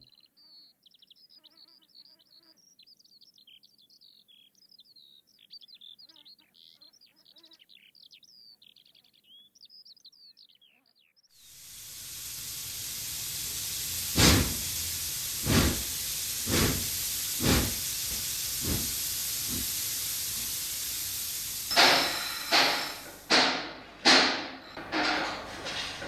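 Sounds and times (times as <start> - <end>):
locomotive exhaust puffs: 11.4 - 26.0
steam locomotive hissing: 11.4 - 26.0
metallic clanks: 11.7 - 26.0.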